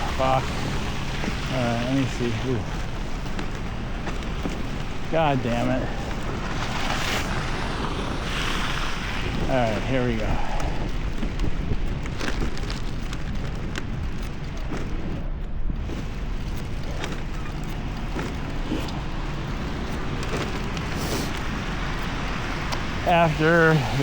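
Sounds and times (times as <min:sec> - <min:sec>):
bicycle tyres hissing through slush: 0:00.0 - 0:15.2, 0:15.8 - 0:24.0
wind on microphone: 0:00.0 - 0:24.0.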